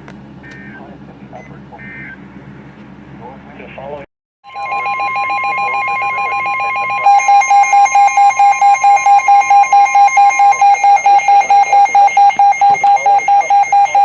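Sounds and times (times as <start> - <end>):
electronic alarm beeping: 4.4 - 14.0
steady warning alarm tone: 4.4 - 14.0.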